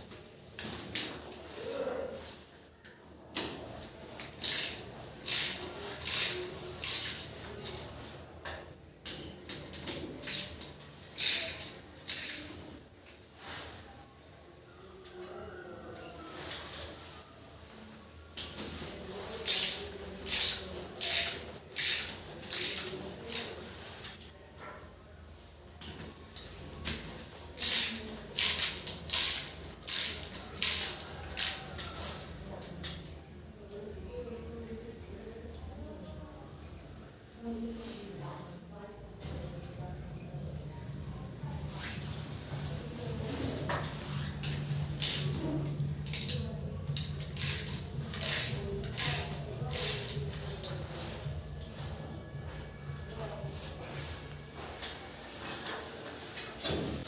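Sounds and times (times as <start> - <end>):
hand tool mechanical strokes: 4.4 - 7.3, 19.4 - 23.5, 27.6 - 31.6, 46.0 - 50.8.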